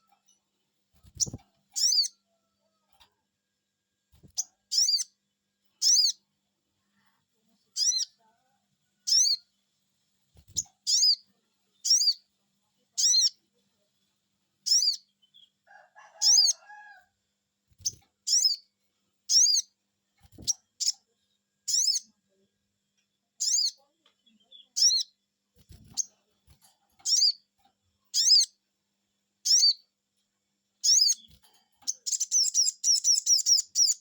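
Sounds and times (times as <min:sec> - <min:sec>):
bird chirping high call: 0:31.9 - 0:34.0.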